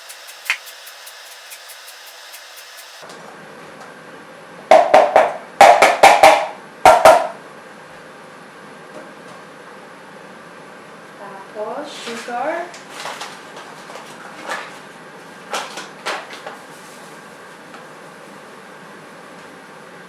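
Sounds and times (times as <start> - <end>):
lemon zested on metal grater: 0.0 - 3.0.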